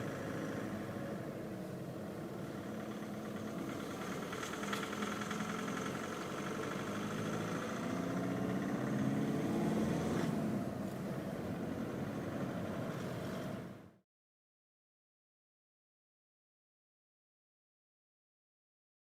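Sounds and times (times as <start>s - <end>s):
diesel car engine running: 0.0s - 14.0s.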